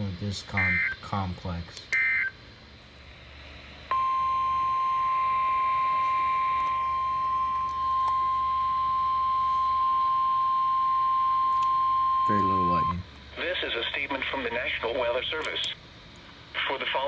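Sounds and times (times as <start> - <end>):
steady warning alarm beep: 0.5 - 1.1, 1.9 - 2.4, 3.9 - 13.1.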